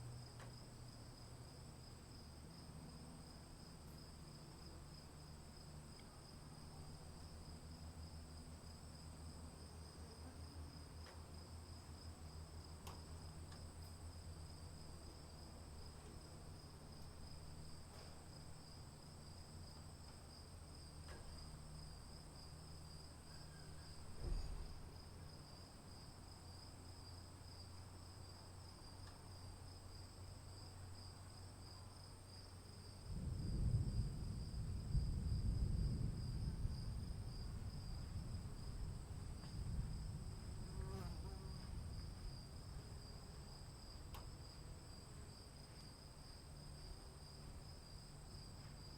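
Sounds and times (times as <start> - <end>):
crickets and insects chirring: 0.2 - 48.9
thunder rumbling: 33.1 - 40.8.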